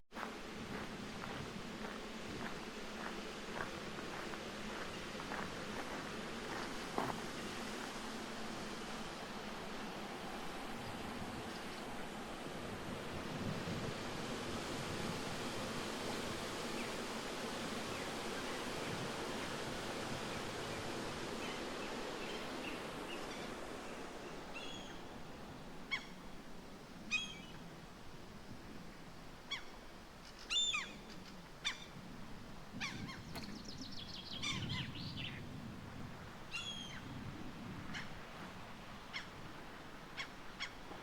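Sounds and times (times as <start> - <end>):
steady rushing noise: 0.2 - 27.0.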